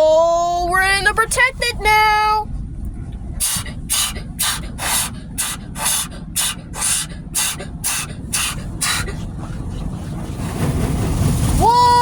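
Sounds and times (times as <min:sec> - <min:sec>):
steady low rumble: 0:00.0 - 0:12.0
car wash hissing swishes: 0:03.4 - 0:11.7.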